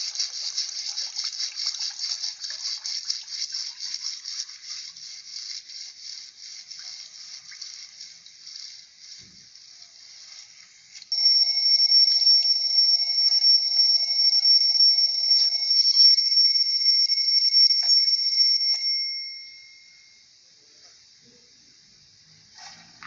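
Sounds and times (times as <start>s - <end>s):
alarm clock high-pitched tone: 11.1s - 20.3s.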